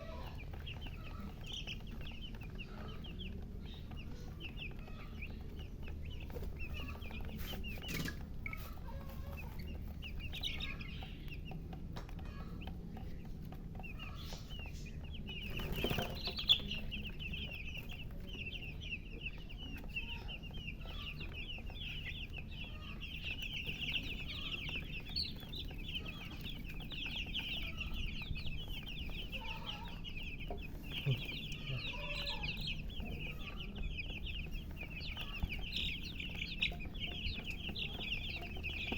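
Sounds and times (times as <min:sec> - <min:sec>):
baby chicks peeping: 0:00.0 - 0:38.9
hen clucking: 0:00.0 - 0:38.9
steady low hum: 0:00.0 - 0:38.9.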